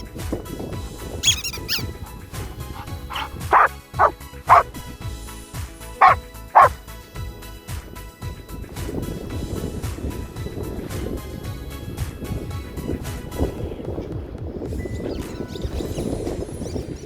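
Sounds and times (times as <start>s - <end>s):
dog barking: 1.2s - 4.6s, 6.0s - 6.7s.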